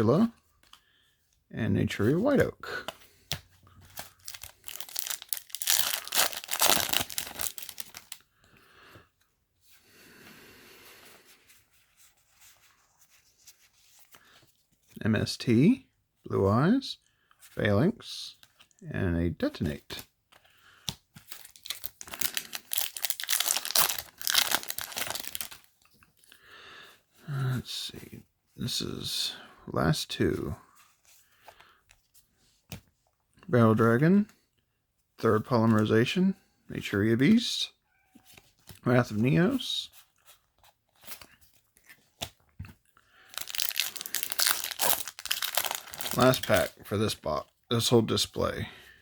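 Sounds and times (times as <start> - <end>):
foil wrapper crinkling and tearing: 4.0 - 8.2, 21.2 - 25.7, 43.2 - 46.7.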